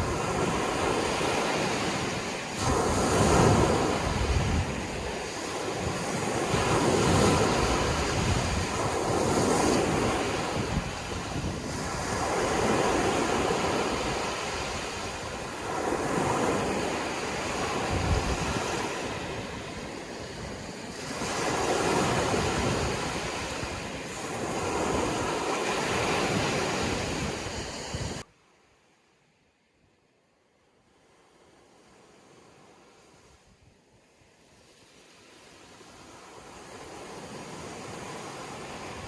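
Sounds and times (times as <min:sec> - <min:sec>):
sea waves surging and washing: 0:00.0 - 0:28.6, 0:30.8 - 0:39.0.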